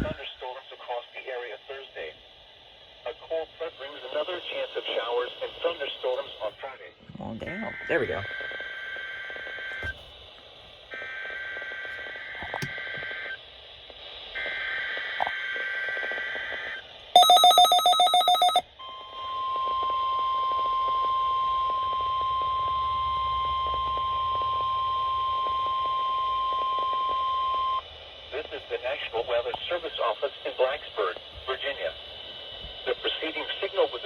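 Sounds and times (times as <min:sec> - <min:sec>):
rapid beeping: 0:17.2 - 0:18.6
steady warning alarm tone: 0:17.2 - 0:18.6.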